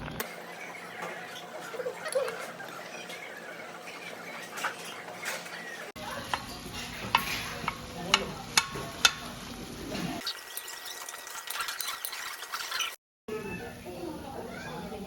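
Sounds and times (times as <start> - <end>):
utensil clinking against dishes: 3.9 - 9.4.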